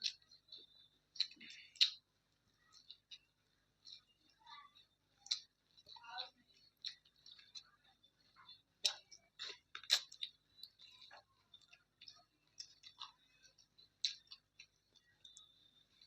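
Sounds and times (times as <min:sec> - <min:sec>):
person chewing: 0:00.0 - 0:16.0
wet mouth clicks and smacks: 0:01.2 - 0:02.0, 0:08.8 - 0:10.8.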